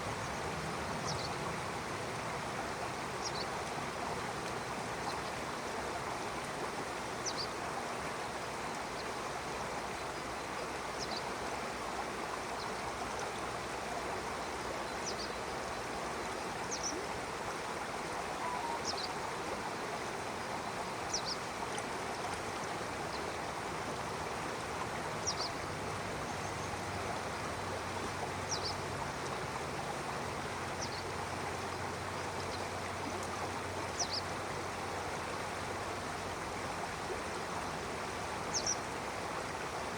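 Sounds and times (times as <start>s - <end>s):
stream running: 0.0s - 39.9s
bird chirping: 18.4s - 19.2s.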